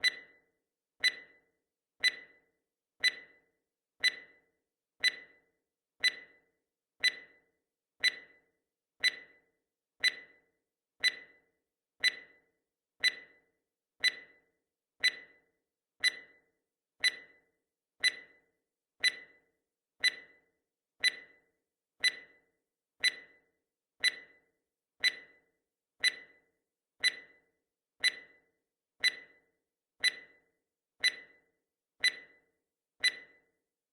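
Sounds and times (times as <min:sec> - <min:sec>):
timer ticking: 0:00.0 - 0:00.4, 0:01.0 - 0:01.4, 0:02.0 - 0:02.4, 0:03.0 - 0:03.4, 0:04.0 - 0:07.4, 0:08.0 - 0:08.4, 0:09.0 - 0:13.4, 0:14.0 - 0:16.4, 0:17.0 - 0:17.4, 0:18.0 - 0:18.4, 0:19.0 - 0:19.4, 0:20.0 - 0:20.4, 0:21.0 - 0:21.4, 0:22.0 - 0:22.4, 0:23.0 - 0:23.4, 0:24.0 - 0:24.4, 0:25.0 - 0:26.4, 0:27.0 - 0:27.4, 0:28.0 - 0:28.4, 0:29.0 - 0:33.5.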